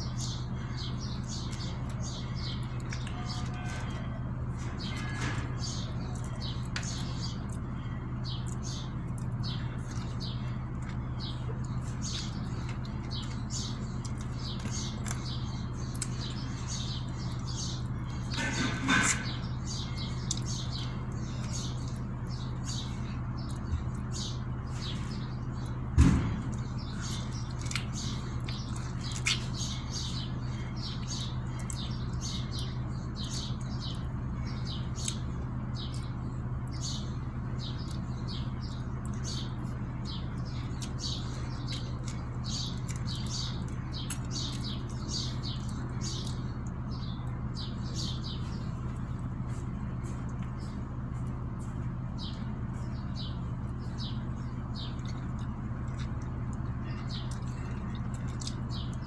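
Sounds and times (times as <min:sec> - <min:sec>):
small birds chirping: 0:00.0 - 0:59.0
steady low hum: 0:00.0 - 0:59.0
thump: 0:26.0 - 0:26.4.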